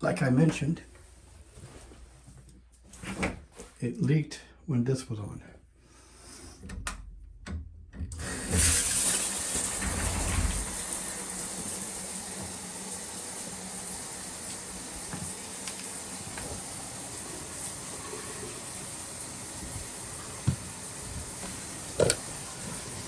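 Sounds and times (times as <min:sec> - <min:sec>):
washing machine filling with water: 0:08.1 - 0:23.0.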